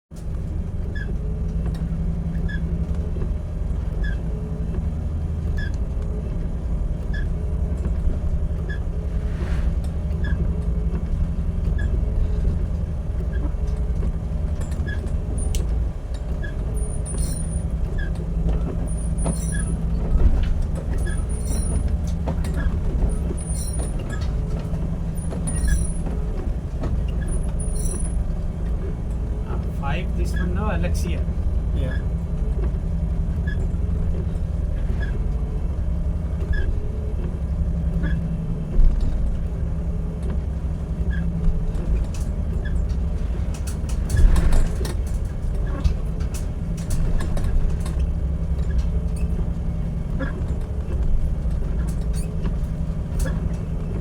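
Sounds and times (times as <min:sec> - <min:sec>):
ship engine drone: 0:00.2 - 0:54.0.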